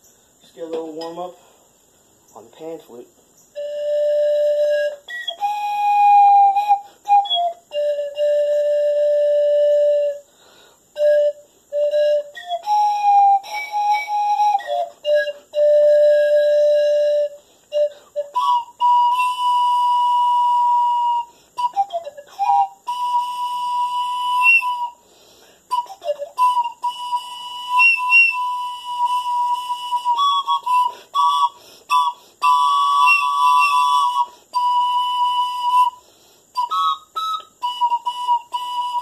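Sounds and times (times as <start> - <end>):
pan flute long notes: 3.6 - 10.3, 11.0 - 25.0, 25.7 - 39.0
player breathing: 10.3 - 10.9.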